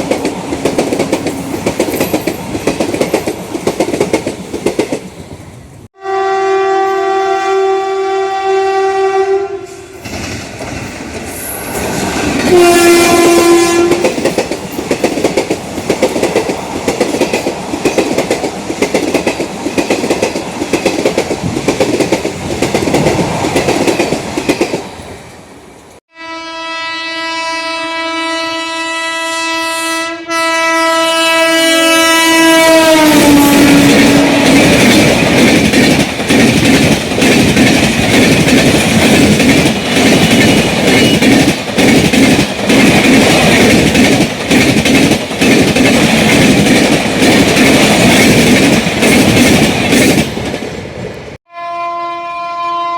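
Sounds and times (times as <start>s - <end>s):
train wheels clickety-clack: 0.0s - 5.2s, 10.0s - 25.0s, 32.9s - 51.2s
locomotive horn blast: 6.0s - 10.0s, 12.4s - 14.2s, 26.1s - 34.8s, 51.5s - 52.9s.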